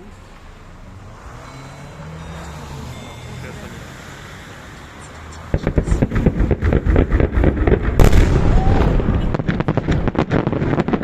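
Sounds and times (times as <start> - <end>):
fireworks crackling bangs: 5.5 - 11.0.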